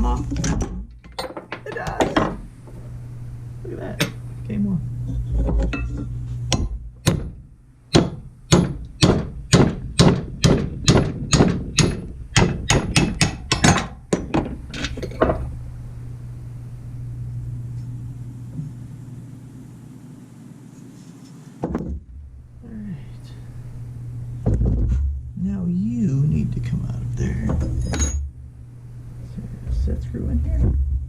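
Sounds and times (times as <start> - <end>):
steady low hum: 0.0 - 31.0
hammer striking metal: 6.5 - 14.5.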